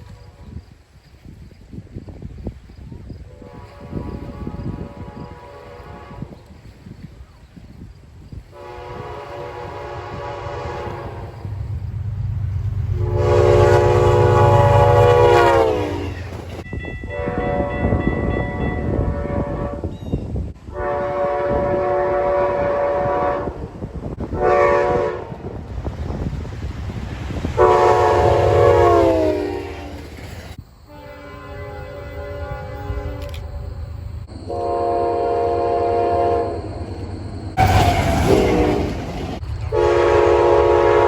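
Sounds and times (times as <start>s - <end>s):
train rumbling: 0.0s - 41.0s
train air horn blasts: 3.3s - 6.7s, 8.5s - 20.0s, 20.6s - 25.6s, 27.6s - 30.1s, 30.9s - 33.8s, 34.4s - 41.0s.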